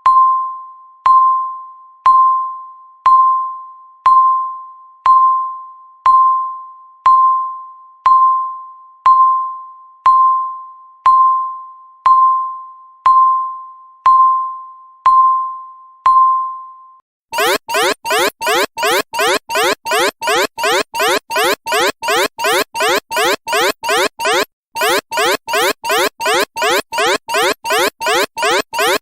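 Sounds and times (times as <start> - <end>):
countdown timer beep: 17.4 - 29.0.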